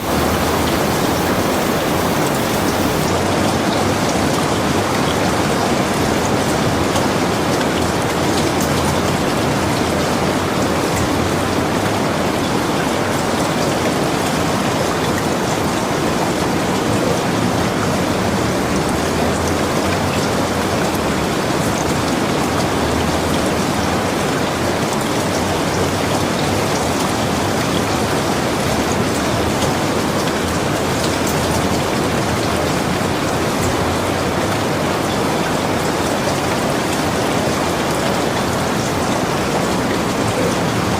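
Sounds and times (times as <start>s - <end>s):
steady rain: 0.0s - 3.2s.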